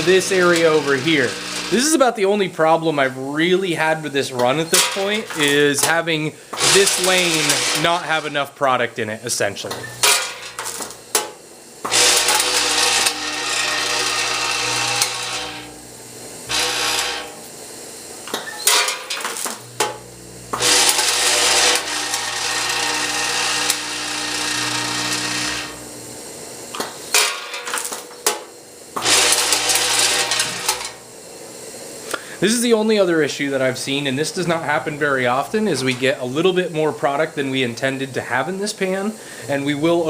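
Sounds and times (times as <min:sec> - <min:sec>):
steady electric hum: 0:00.0 - 0:40.0
vibratory feed pans buzzing: 0:00.0 - 0:40.0
candies rattling down metal pans: 0:04.7 - 0:05.8.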